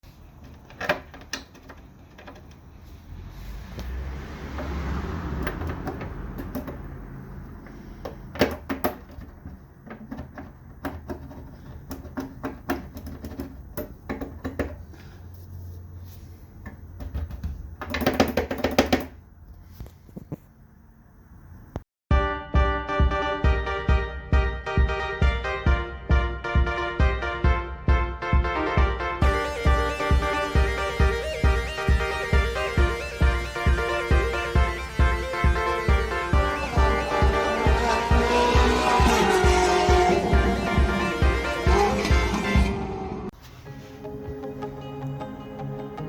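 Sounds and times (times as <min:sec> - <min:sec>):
car engine humming: 0:01.6 - 0:19.4, 0:29.2 - 0:43.4.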